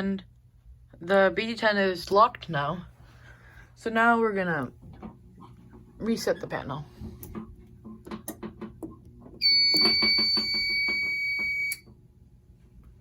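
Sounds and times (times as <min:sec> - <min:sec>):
high-pitched alarm panel beep: 0:09.4 - 0:11.9.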